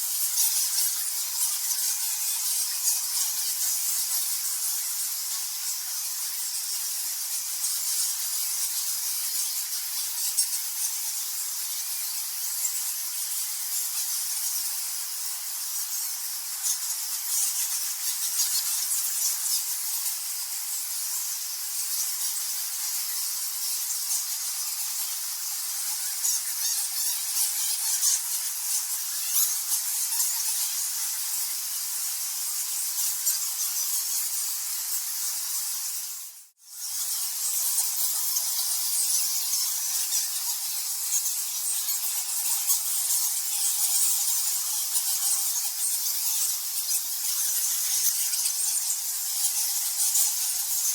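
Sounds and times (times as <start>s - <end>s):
bats squeaking: 25.2s - 31.2s.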